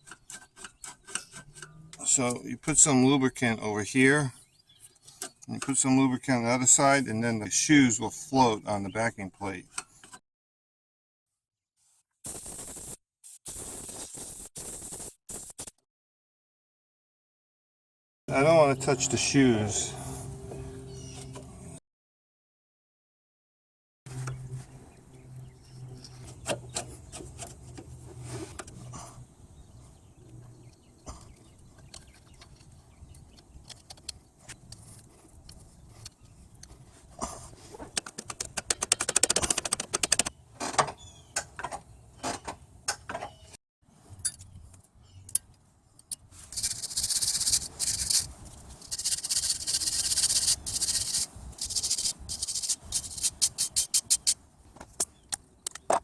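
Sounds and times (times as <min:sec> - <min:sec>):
wire brush scraping rust: 0:00.0 - 0:02.2, 0:24.1 - 0:29.2, 0:46.3 - 0:54.4
spray can hissing: 0:12.2 - 0:15.8, 0:46.5 - 0:54.4.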